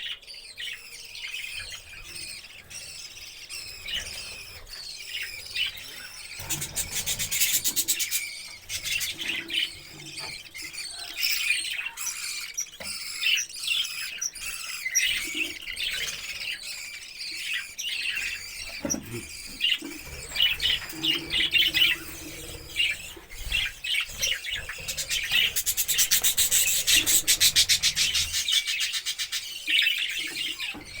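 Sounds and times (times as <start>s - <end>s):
parrots chirping and chattering: 0.0s - 31.0s.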